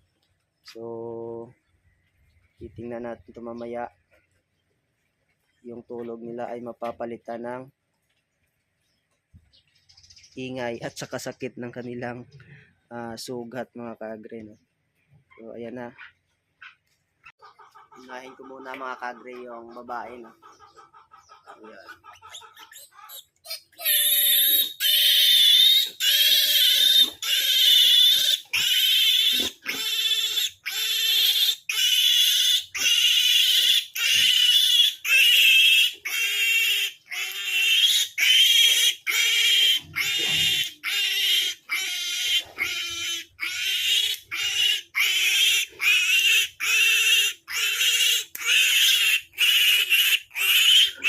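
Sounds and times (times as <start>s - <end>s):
piglet squealing: 20.2s - 51.0s.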